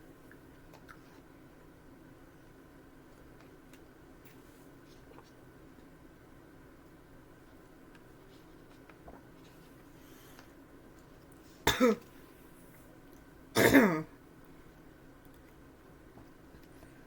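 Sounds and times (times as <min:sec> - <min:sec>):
person burping: 0:13.6 - 0:14.1.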